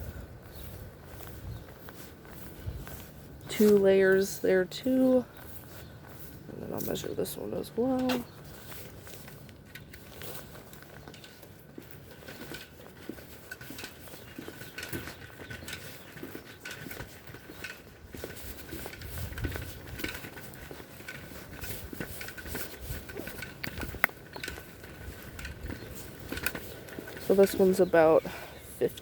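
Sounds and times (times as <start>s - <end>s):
footsteps: 0.0s - 29.0s
handling taps and clicks: 19.5s - 27.9s.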